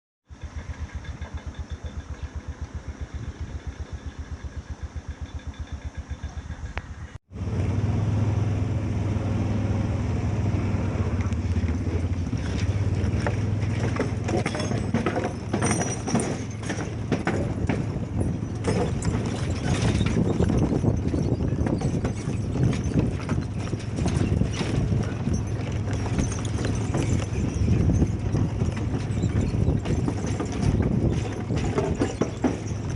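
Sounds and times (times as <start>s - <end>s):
fast mechanical pulse: 0.3s - 7.2s
train clanks and clicks: 0.3s - 7.2s, 10.4s - 32.9s
train engine low hum: 0.3s - 19.5s.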